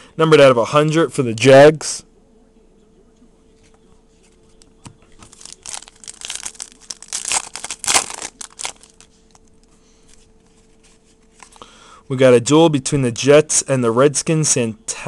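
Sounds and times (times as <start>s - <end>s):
wrapper tearing and crinkling: 5.3s - 9.4s.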